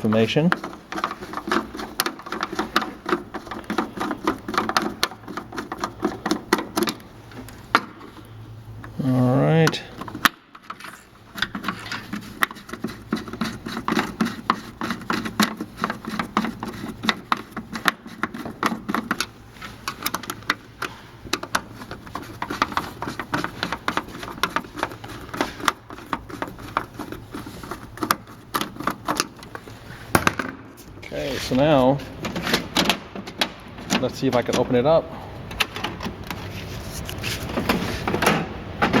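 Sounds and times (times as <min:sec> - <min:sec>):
hand tools clicking and tapping: 0:00.0 - 0:08.2, 0:09.6 - 0:30.9.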